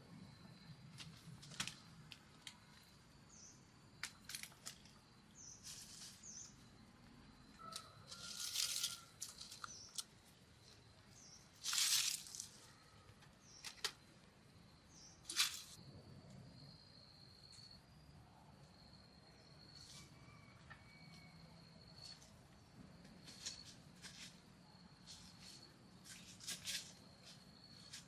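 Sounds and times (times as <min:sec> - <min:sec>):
bird chirps: 0:08.9 - 0:10.1.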